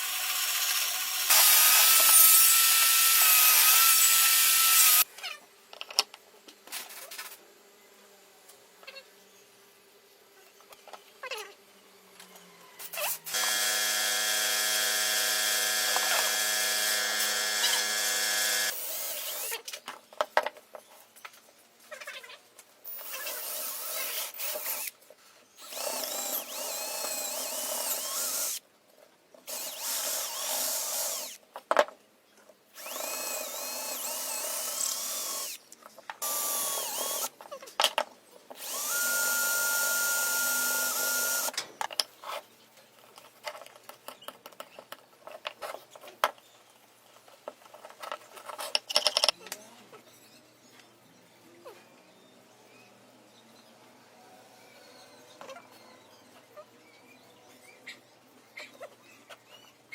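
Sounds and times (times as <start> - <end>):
power tools running: 0.2 - 5.0, 13.3 - 19.5, 25.6 - 28.6, 29.5 - 31.4, 32.8 - 35.6, 36.2 - 37.3, 38.6 - 41.5
electric motor whine: 13.3 - 19.5, 36.2 - 37.3, 38.6 - 41.5.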